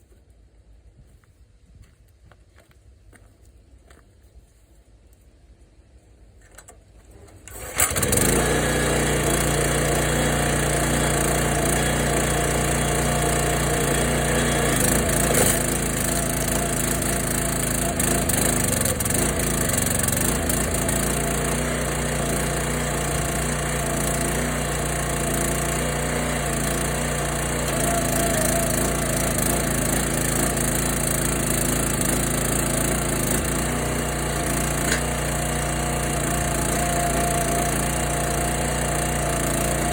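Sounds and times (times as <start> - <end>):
small engine starting and running: 7.2 - 39.9.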